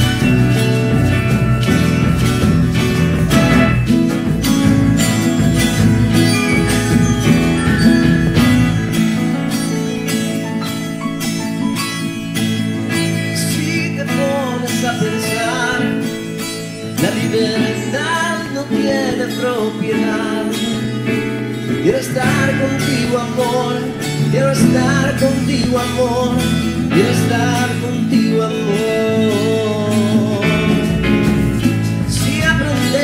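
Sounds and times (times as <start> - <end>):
wavering lead melody: 0.0 - 14.5
acoustic guitars strumming: 0.0 - 33.0.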